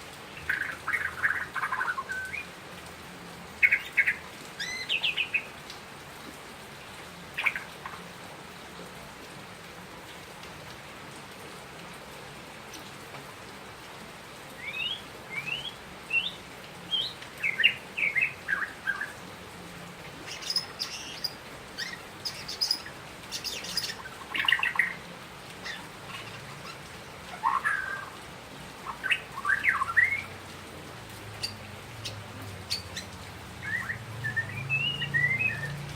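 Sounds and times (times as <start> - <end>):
bird singing whistled notes: 14.6 - 19.1, 32.7 - 35.8.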